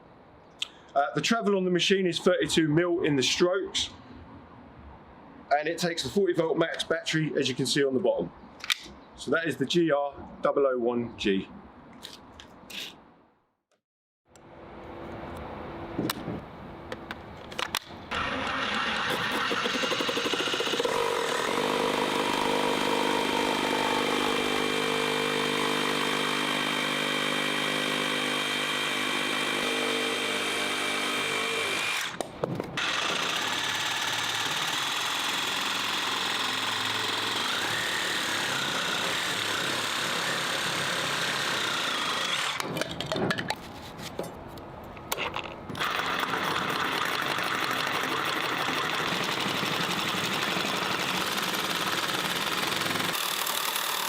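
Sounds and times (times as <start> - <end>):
reciprocating saw running: 18.1 - 32.2, 32.8 - 42.7, 45.8 - 54.0.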